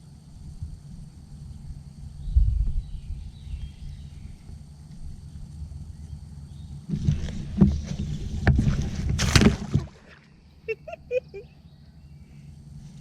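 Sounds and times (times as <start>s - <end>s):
low steady rumble: 0.0s - 13.0s
knocks on kayak: 6.9s - 10.0s
water splashing: 7.0s - 10.4s.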